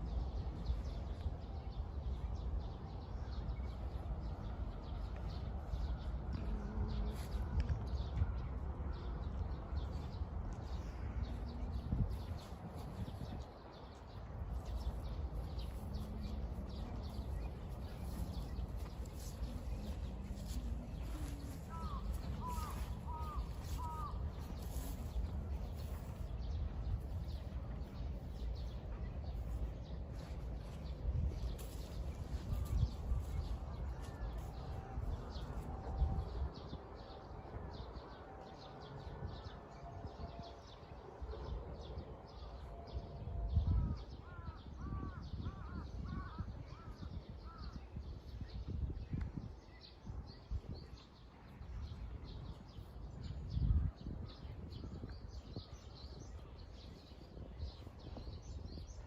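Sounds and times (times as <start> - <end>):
steady low rumble: 0.0 - 40.2
bird calling: 21.2 - 24.8.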